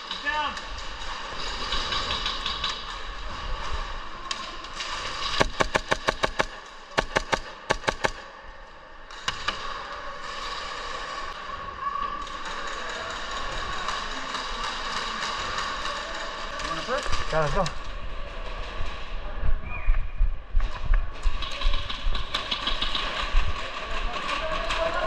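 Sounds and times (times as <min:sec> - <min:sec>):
airsoft gunshots: 0:05.2 - 0:08.4.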